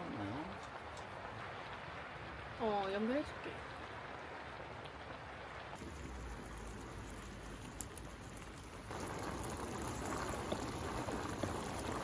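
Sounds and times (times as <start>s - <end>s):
rain pattering on a tent: 0.0s - 12.0s.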